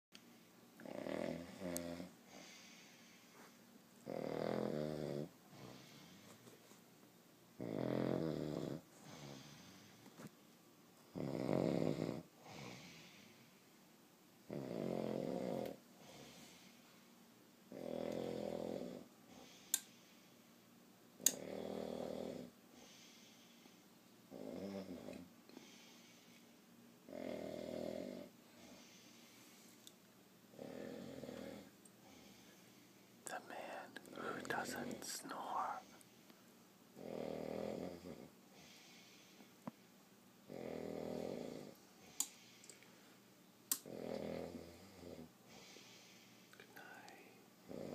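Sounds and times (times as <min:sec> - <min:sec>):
man snoring: 0:04.0 - 0:06.0, 0:07.6 - 0:09.8, 0:11.2 - 0:13.2, 0:14.5 - 0:16.2, 0:17.7 - 0:19.1, 0:21.3 - 0:22.5, 0:24.3 - 0:25.2, 0:27.1 - 0:28.3, 0:30.6 - 0:31.7, 0:37.0 - 0:38.3, 0:40.5 - 0:41.8, 0:43.8 - 0:45.3, 0:46.8 - 0:47.9.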